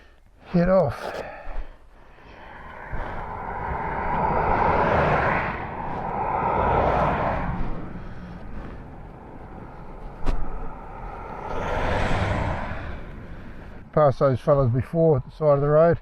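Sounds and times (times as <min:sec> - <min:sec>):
wind noise: 0:01.5 - 0:14.0.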